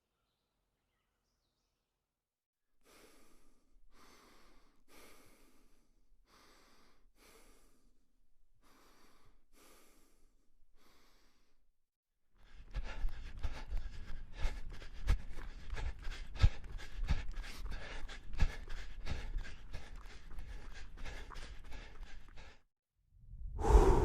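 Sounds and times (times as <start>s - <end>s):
person breathing heavily: 2.8s - 8.0s, 8.6s - 11.6s, 12.4s - 22.7s, 23.4s - 24.0s.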